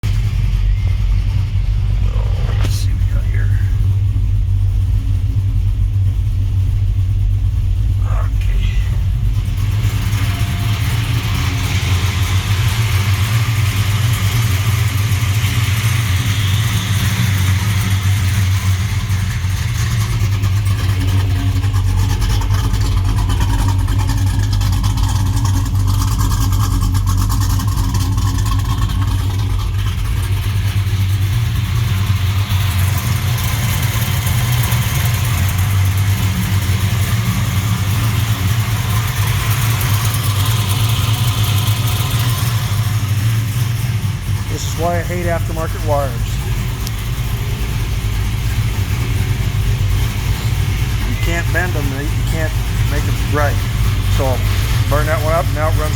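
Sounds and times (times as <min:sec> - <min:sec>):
car engine idling: 0:00.0 - 0:55.9.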